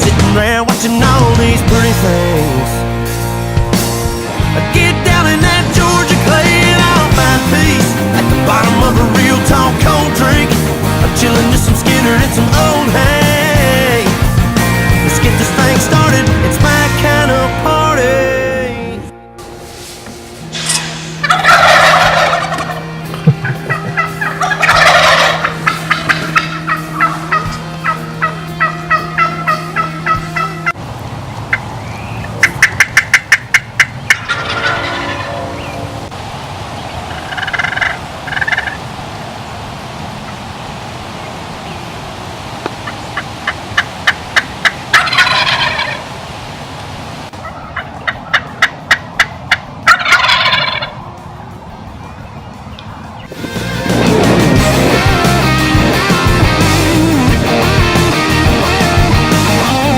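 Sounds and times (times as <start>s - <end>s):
turkey gobbling: 20.6s - 30.8s, 31.4s - 36.0s, 36.8s - 38.9s, 42.6s - 46.1s, 47.3s - 51.0s.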